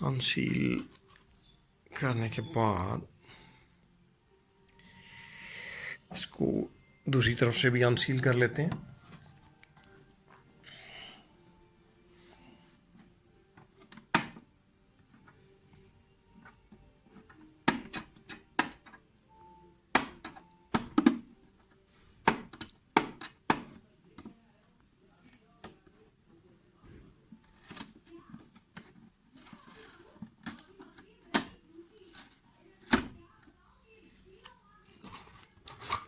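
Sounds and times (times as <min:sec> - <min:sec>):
hard plastic parts clicking: 0:16.4 - 0:19.0, 0:22.2 - 0:24.4, 0:27.4 - 0:36.0
packaging rustling: 0:28.9 - 0:31.2, 0:33.9 - 0:36.0.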